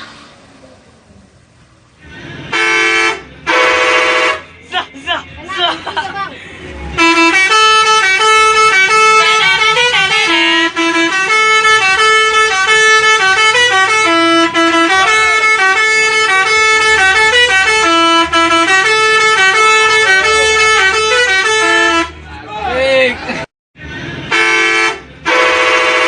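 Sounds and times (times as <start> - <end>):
multi-tone musical bus horn: 2.3 - 5.8, 6.8 - 22.3, 24.2 - 26.0.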